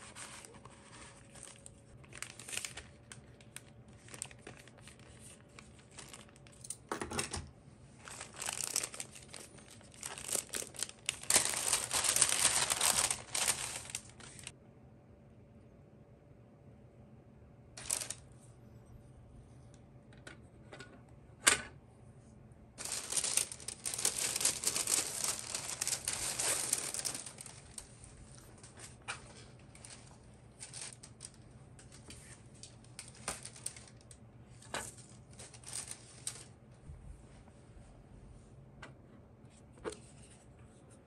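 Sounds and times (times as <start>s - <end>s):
packaging crinkling and rustling: 0.0s - 6.7s, 8.0s - 14.5s, 17.8s - 18.3s, 22.8s - 36.6s.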